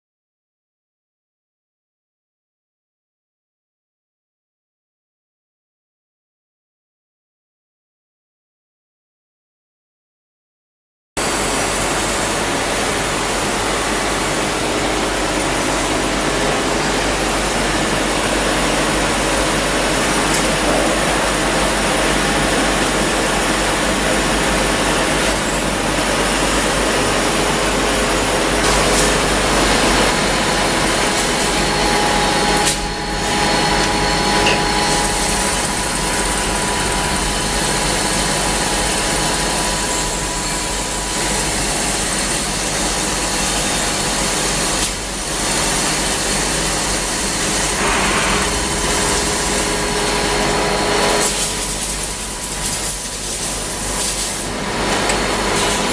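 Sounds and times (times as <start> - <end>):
grinding machine whirring hiss: 11.2 - 55.9.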